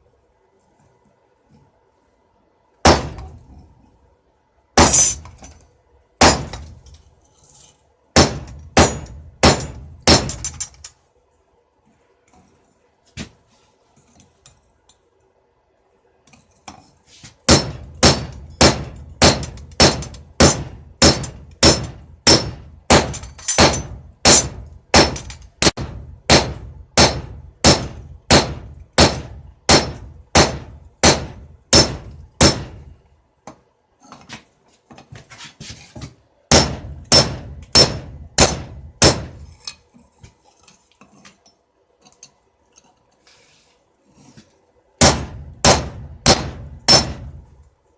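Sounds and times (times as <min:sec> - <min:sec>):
hammer striking steel on anvil: 0:08.2 - 0:10.6, 0:17.5 - 0:32.9, 0:36.5 - 0:39.5, 0:45.0 - 0:47.4.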